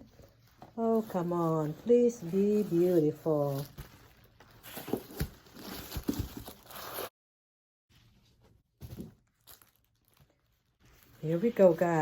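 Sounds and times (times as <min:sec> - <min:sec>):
packaging rustling and knocks: 0:03.5 - 0:06.8.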